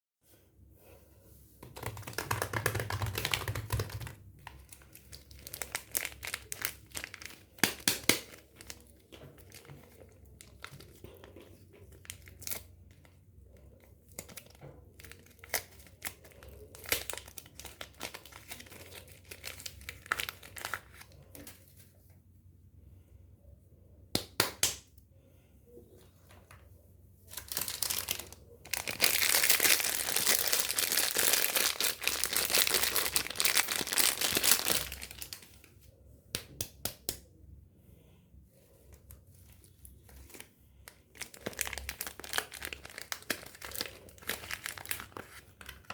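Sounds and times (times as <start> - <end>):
wrapper crinkling and tearing: 1.8 - 11.3, 11.9 - 13.1, 14.0 - 21.6, 27.3 - 35.6, 39.4 - 45.9.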